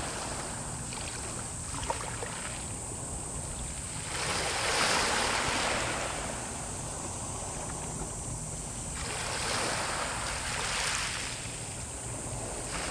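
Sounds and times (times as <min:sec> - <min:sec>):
waves breaking: 0:03.8 - 0:06.5, 0:09.0 - 0:11.7, 0:12.3 - 0:12.9.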